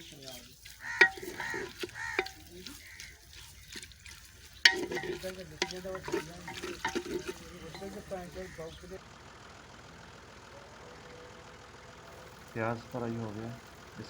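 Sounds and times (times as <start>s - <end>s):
spoon stirring: 0.0s - 8.9s
onions sizzling in oil: 0.0s - 9.0s
spoon knocking against pot: 0.6s - 8.7s.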